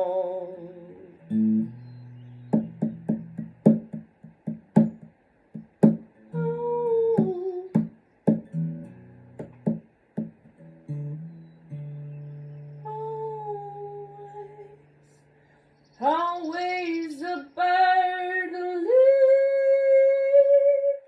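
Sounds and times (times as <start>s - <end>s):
guitar playing: 0.0s - 15.6s.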